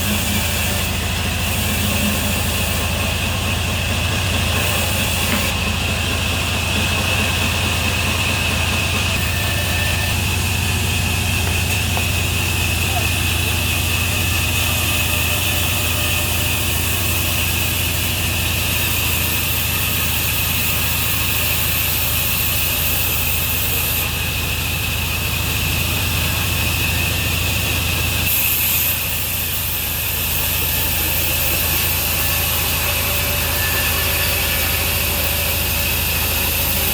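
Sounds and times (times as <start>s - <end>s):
low motor hum: 0.0s - 19.6s, 29.1s - 36.9s
sawmill saw cutting log: 0.0s - 36.9s.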